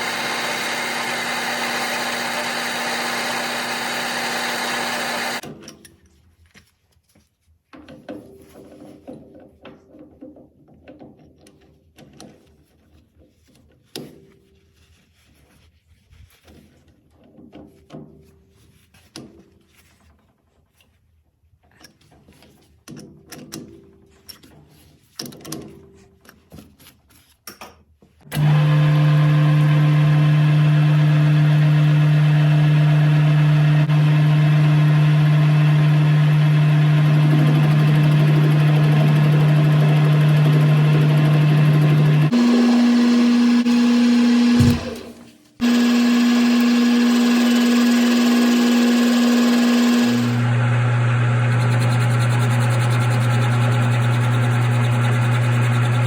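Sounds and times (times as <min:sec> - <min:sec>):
machine tool motor humming: 0:00.0 - 0:05.4, 0:28.3 - 0:56.0.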